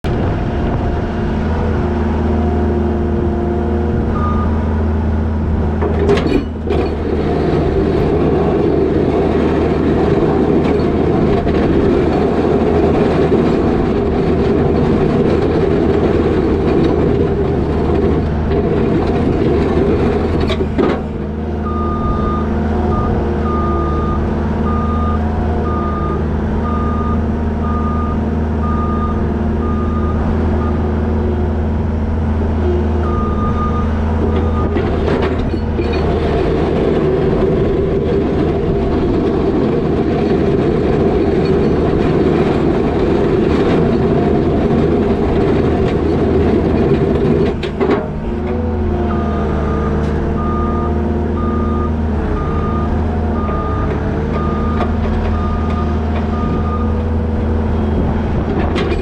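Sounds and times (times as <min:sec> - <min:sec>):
diesel engine running: 0:00.0 - 0:59.0
backup alarm beeping: 0:21.6 - 0:30.8, 0:49.1 - 0:54.8, 0:55.4 - 0:57.0.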